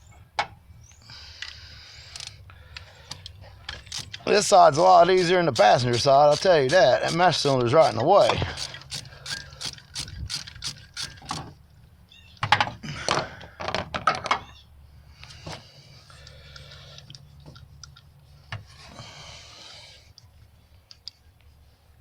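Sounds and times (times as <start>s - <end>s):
metal tool clicks and clanks: 3.1s - 11.5s.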